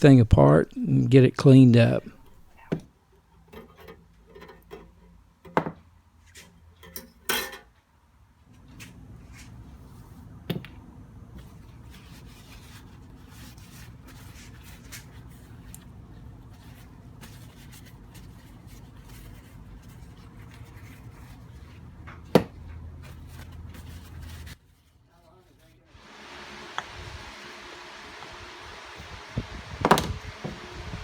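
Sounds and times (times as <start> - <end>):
low hum: 25.9 - 31.0.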